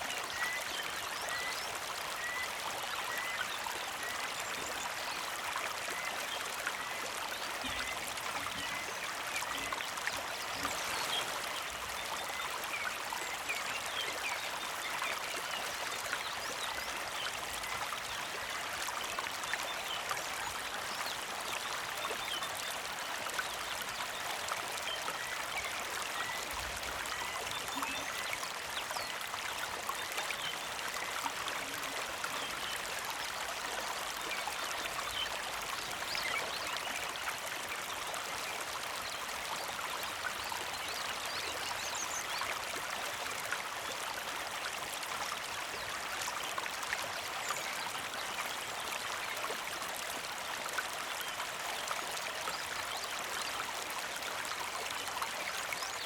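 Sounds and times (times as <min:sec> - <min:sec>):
water trickling over rocks: 0:00.0 - 0:56.0.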